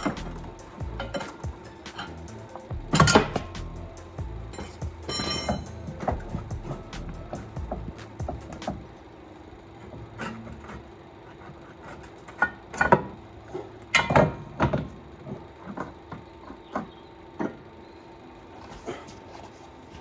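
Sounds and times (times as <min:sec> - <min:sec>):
hand tools clanking on metal: 0:00.0 - 0:08.9, 0:11.9 - 0:17.6.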